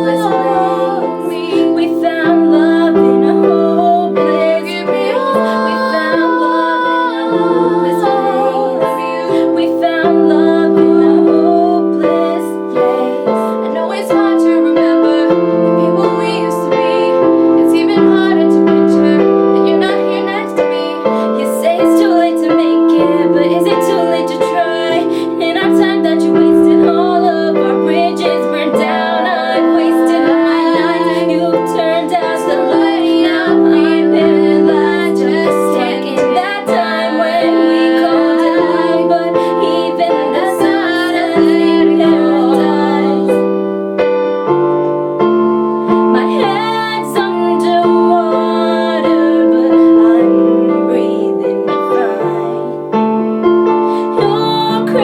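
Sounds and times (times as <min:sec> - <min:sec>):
woman singing: 0:00.0 - 0:43.7, 0:45.9 - 0:53.0, 0:53.8 - 0:55.0
piano chords: 0:00.0 - 0:55.0.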